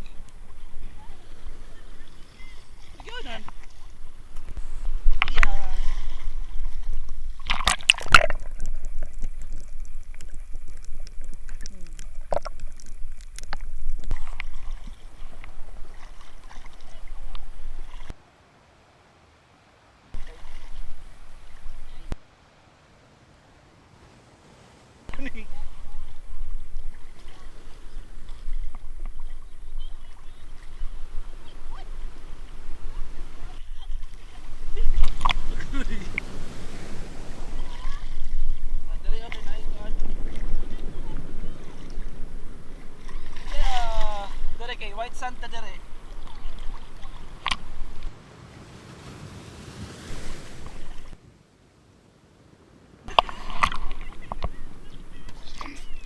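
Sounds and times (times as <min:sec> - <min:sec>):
seawater sloshing: 0:00.0 - 0:18.2, 0:20.1 - 0:51.4, 0:53.0 - 0:56.0
faint splashes: 0:00.0 - 0:56.0
sea waves washing: 0:00.0 - 0:56.0
wind rumble on microphone: 0:24.0 - 0:44.6, 0:45.4 - 0:51.5.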